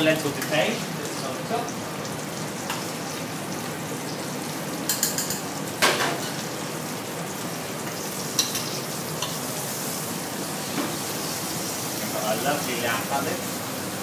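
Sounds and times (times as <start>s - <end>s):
food sizzling in a pan: 0.0s - 14.0s
utensils clinking on plates: 4.9s - 6.4s.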